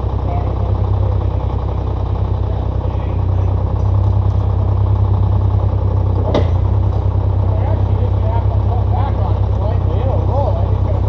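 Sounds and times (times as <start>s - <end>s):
vehicle engine droning: 0.0s - 11.0s.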